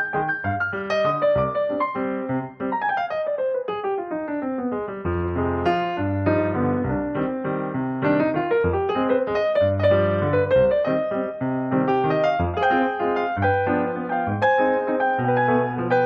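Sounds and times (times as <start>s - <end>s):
piano music: 0.0s - 16.0s.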